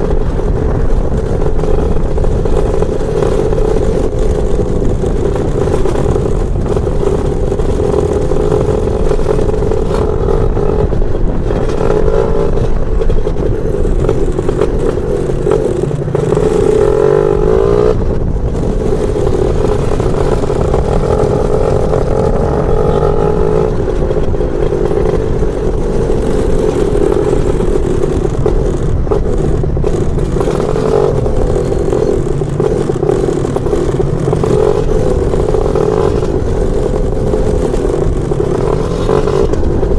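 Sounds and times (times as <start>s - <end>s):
two-stroke scooter engine revving: 0.0s - 39.9s.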